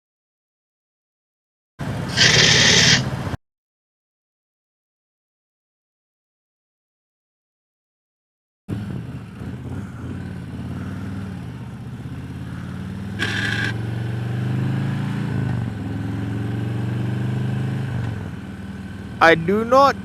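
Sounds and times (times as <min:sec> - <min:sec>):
motorcycle engine revving: 0:01.8 - 0:03.4, 0:08.7 - 0:20.0
short hiss: 0:02.1 - 0:03.1.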